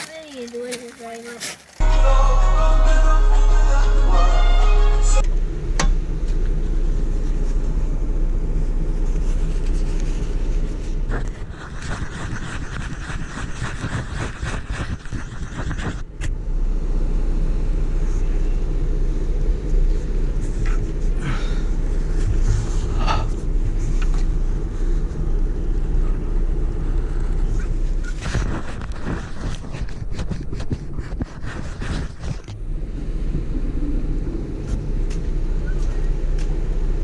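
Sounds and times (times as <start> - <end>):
engine low rumble: 1.8 - 37.0
rough crackling noise: 8.9 - 16.3, 26.8 - 36.8.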